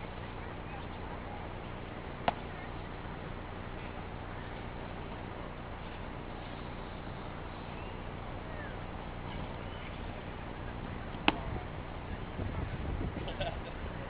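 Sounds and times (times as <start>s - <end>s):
outdoor background hiss: 0.0s - 14.0s
faint bird chirps: 5.8s - 10.7s.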